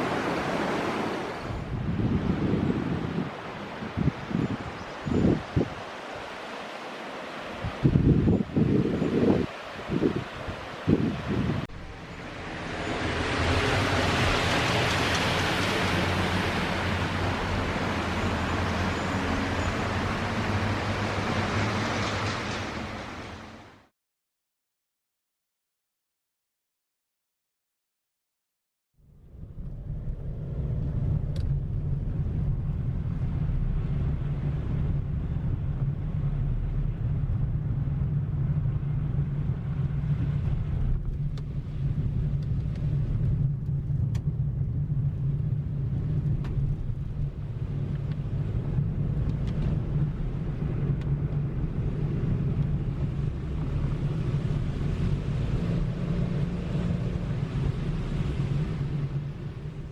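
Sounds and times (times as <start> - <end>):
car engine and road rumble: 0.0 - 23.9, 29.0 - 59.9.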